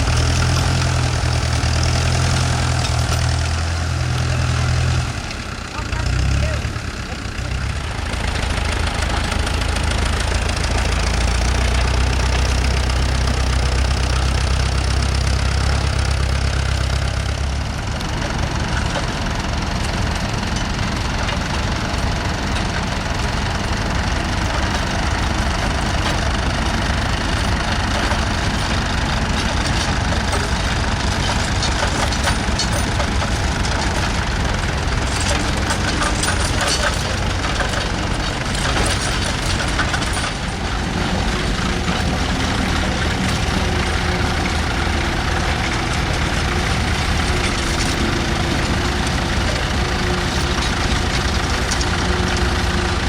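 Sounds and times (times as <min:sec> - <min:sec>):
deep tractor engine rumble: 0:00.0 - 0:53.0.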